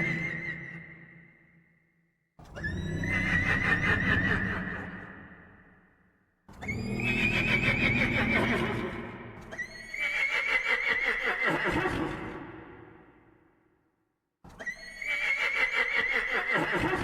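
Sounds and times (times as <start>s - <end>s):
wavering horse whinnies: 2.5s - 5.0s, 9.5s - 12.1s, 14.6s - 17.0s.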